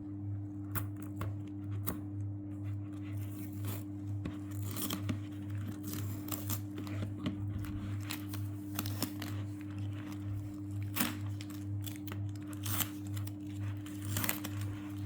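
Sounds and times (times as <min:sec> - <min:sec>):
tape being peeled: 0:03.2 - 0:15.0.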